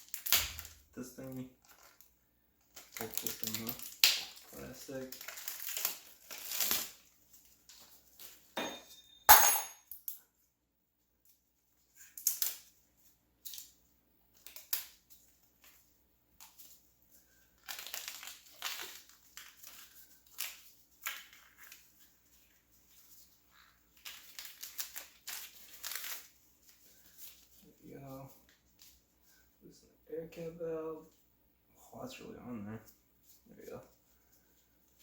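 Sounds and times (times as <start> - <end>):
plastic packaging crinkling: 0.0 - 8.5, 11.8 - 29.0.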